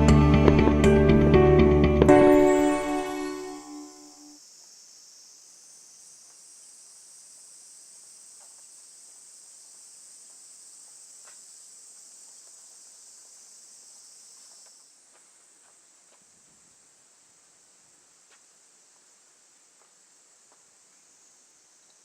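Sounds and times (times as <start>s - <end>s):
crickets chirping: 2.0s - 22.0s
faint ticks: 18.2s - 21.1s, 21.8s - 22.0s.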